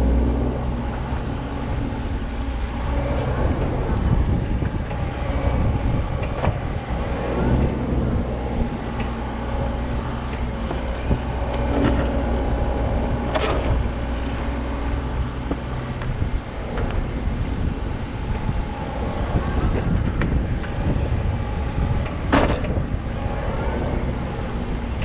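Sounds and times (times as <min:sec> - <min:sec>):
diesel engine running: 0:00.0 - 0:25.0
machine knocks and clanks: 0:00.7 - 0:14.6, 0:18.3 - 0:23.9.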